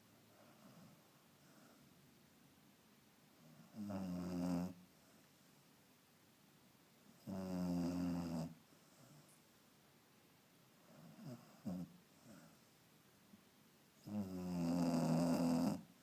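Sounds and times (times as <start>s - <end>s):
dog snoring: 3.4s - 4.8s, 7.1s - 9.3s, 10.8s - 12.6s, 14.0s - 15.9s.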